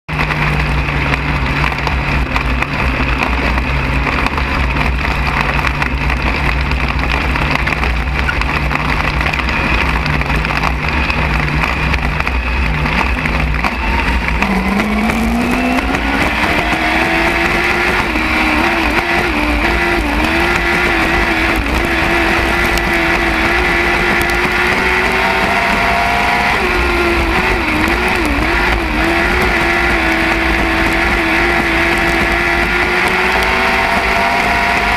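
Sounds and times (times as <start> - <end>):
race car engine revving: 0.1 - 34.9.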